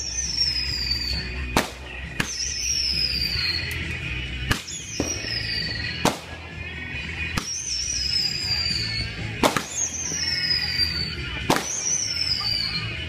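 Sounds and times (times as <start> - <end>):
fireworks whistling: 0.0 - 13.0
fireworks bangs: 4.5 - 6.4, 7.4 - 12.5.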